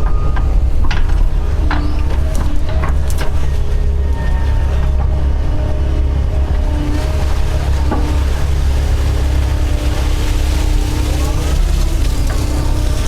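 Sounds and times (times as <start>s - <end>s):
excavator diesel engine running: 0.0s - 13.0s.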